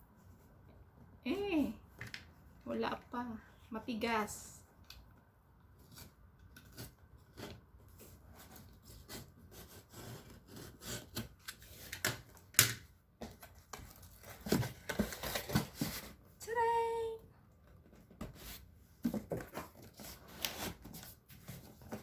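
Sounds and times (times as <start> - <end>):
blade scraping cardboard box: 6.6 - 11.9.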